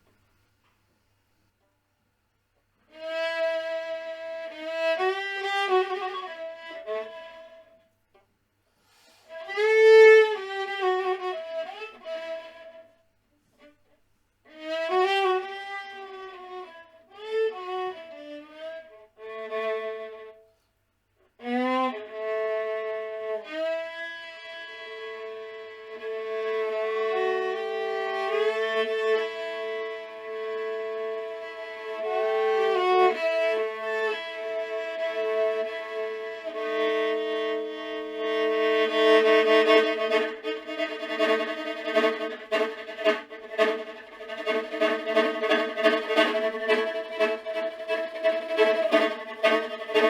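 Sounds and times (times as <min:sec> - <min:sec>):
solo instrumental melody: 0:31.0 - 0:50.0.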